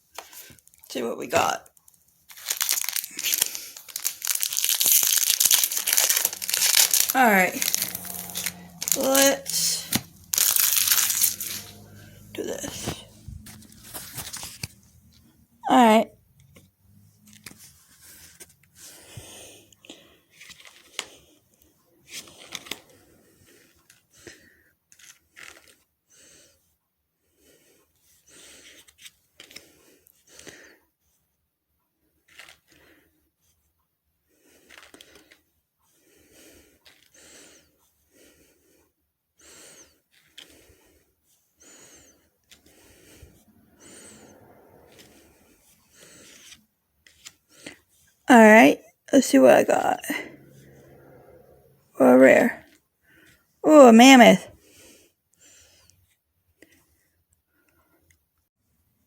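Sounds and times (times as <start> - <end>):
foil wrapper tearing: 2.3 - 11.9
wrapper crackling: 2.3 - 14.7
quiet breathing: 2.4 - 15.5, 16.3 - 24.8, 34.2 - 48.2, 50.0 - 52.0.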